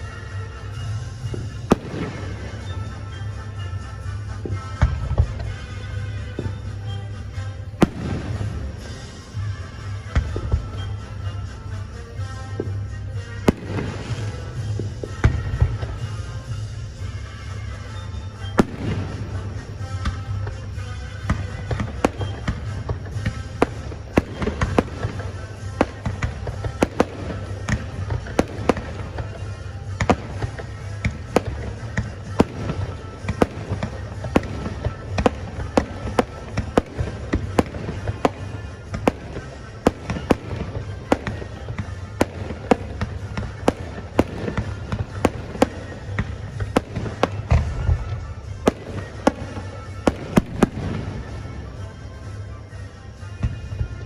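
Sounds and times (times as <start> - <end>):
fireworks banging: 0.0 - 54.0
music playing: 0.0 - 54.0.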